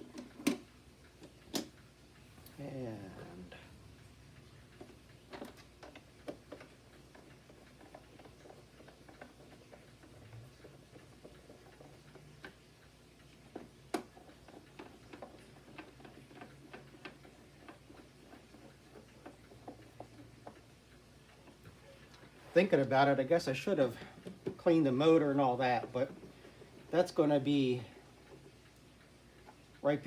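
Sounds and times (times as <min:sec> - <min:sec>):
plastic parts clicking and tapping: 0:00.0 - 0:01.8, 0:04.7 - 0:29.8.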